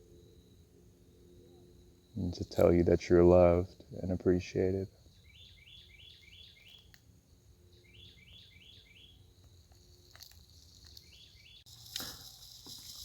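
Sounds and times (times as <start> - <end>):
faint songbird chirping: 0.0 - 13.0.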